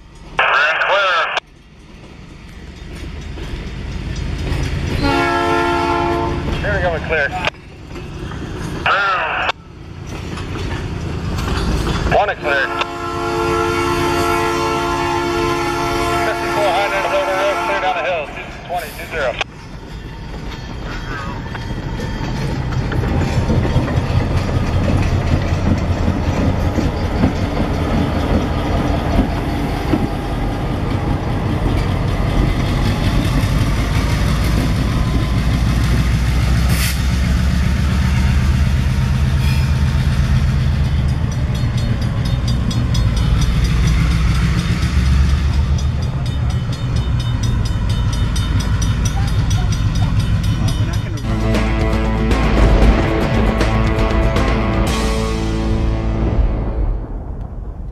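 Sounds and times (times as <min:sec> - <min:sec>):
locomotive engine drone: 0:00.0 - 0:57.9
train wheels clattering on rail: 0:01.5 - 0:06.6, 0:09.7 - 0:12.2, 0:19.4 - 0:55.0.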